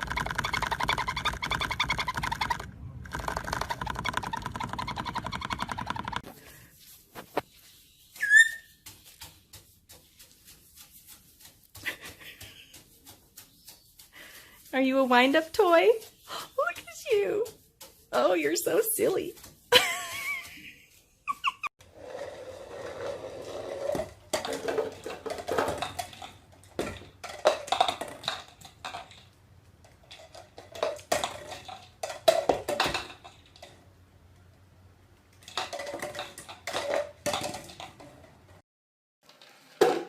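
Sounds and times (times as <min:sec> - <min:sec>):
short squeaks: 0:08.2 - 0:08.8
small hard objects clattering: 0:22.9 - 0:33.8, 0:35.3 - 0:38.5.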